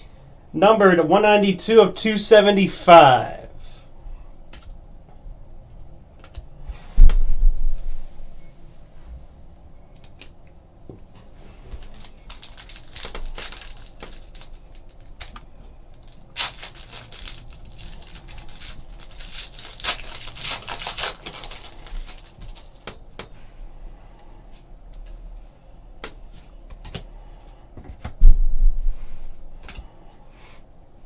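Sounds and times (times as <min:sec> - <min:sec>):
pack wrappers crinkling: 0:11.6 - 0:23.0.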